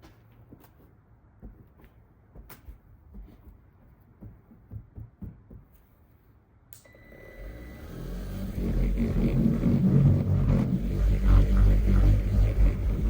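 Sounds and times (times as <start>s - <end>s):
handling taps and knocks: 0.0s - 6.0s
buffer-polisher motor whining: 6.9s - 13.0s.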